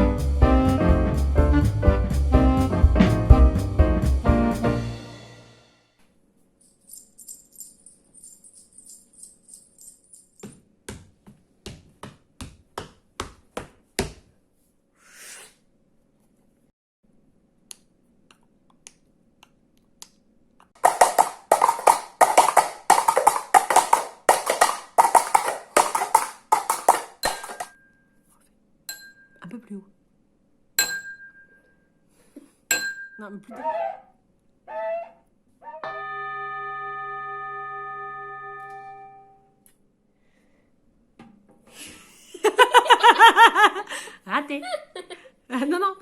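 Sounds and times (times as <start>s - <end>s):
sharp taps and clicks: 20.8s - 27.7s.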